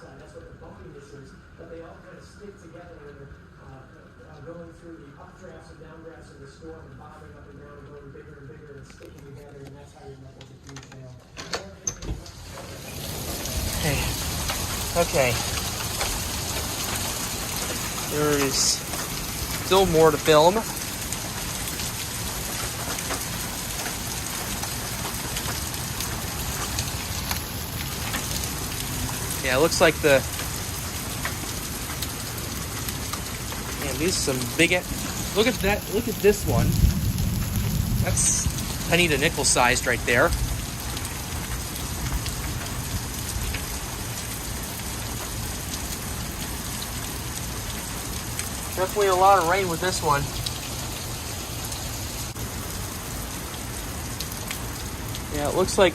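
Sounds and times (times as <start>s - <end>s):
heavy rain pouring: 11.7s - 55.9s
hailstones striking ground: 12.2s - 55.9s.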